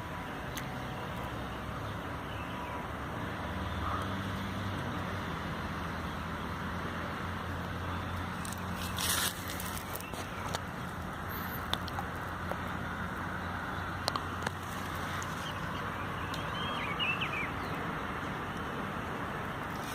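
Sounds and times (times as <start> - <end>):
noisy rustle: 4.2 - 13.4, 18.8 - 19.9.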